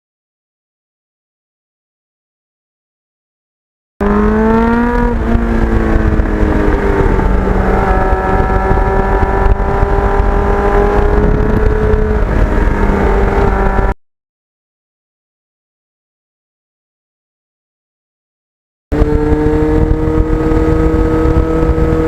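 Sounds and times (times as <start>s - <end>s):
motorcycle engine accelerating: 4.0s - 14.0s, 18.9s - 22.0s.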